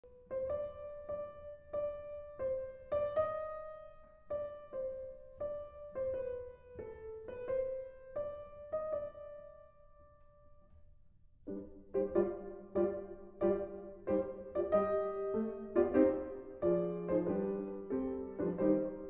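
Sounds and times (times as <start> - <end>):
slow piano melody: 0.0 - 19.0.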